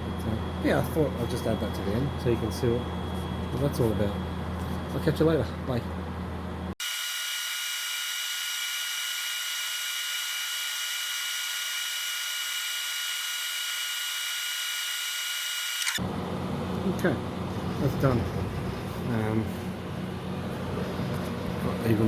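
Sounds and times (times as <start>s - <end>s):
laser engraver high-pitched whine: 6.8s - 16.0s.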